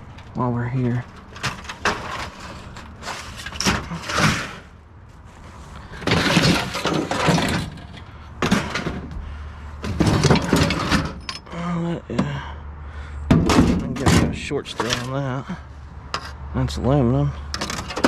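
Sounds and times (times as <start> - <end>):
scrap metal clattering: 0.9 - 11.5.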